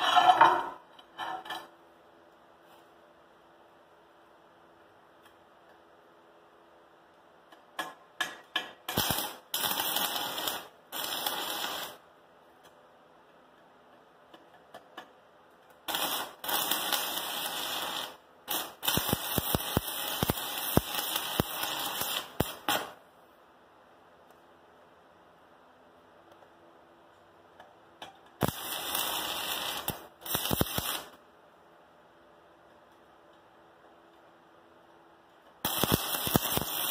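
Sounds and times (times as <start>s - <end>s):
welding arc crackling: 8.9s - 12.0s, 15.8s - 23.0s, 28.4s - 31.2s, 35.6s - 36.9s.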